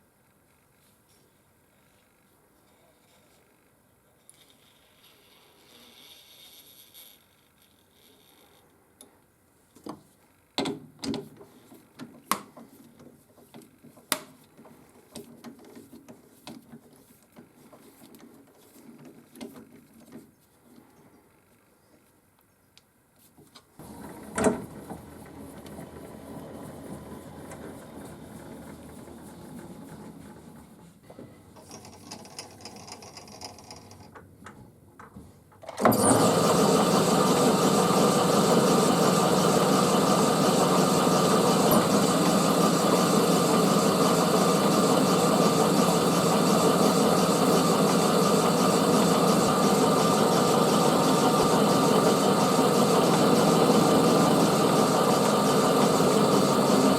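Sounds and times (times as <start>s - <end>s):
electric workshop machine running: 23.8s - 30.8s, 35.8s - 56.9s.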